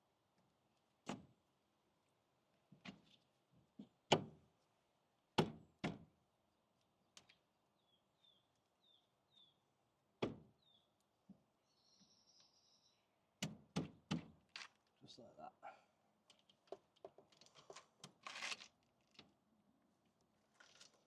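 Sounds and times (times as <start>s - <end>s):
faint high chirps: 11.6s - 13.1s.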